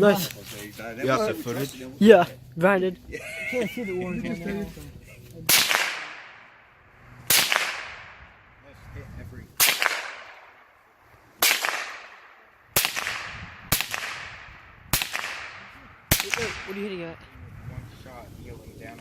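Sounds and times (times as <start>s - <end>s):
gunshots with echo: 5.5s - 6.4s, 7.3s - 8.3s, 9.6s - 10.6s, 11.4s - 16.9s.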